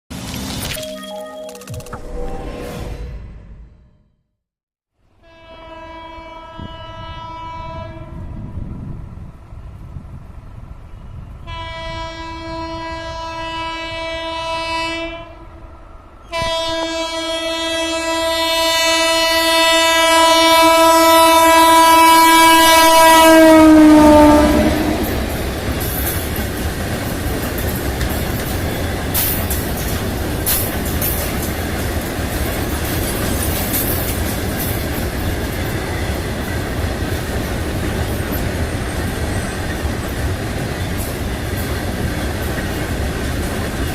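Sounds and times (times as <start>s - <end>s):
locomotive horn: 5.2s - 8.4s, 11.4s - 15.6s, 16.3s - 25.4s
train wagons rumbling and clattering: 15.9s - 43.9s.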